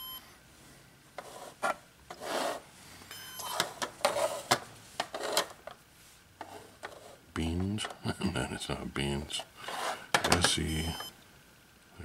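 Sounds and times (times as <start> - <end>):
plastic cubes scraping on table: 1.2 - 2.6, 3.6 - 5.6, 9.6 - 10.1.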